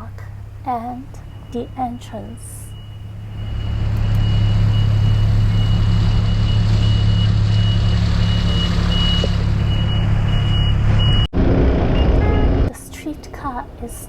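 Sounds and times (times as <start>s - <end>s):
vehicle engine droning: 0.0s - 14.0s
reversing alarm beeping: 0.9s - 11.3s.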